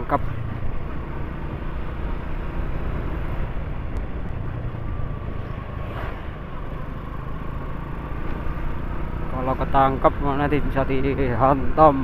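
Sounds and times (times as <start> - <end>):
motorcycle engine hum: 0.0 - 12.0.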